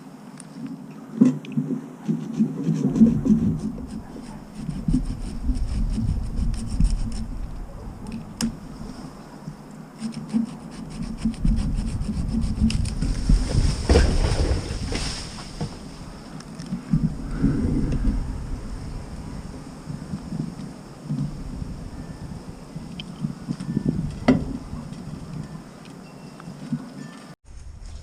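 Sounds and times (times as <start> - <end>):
rubbing and scraping: 2.0 - 25.5
low rumble: 3.0 - 9.6, 11.0 - 25.6.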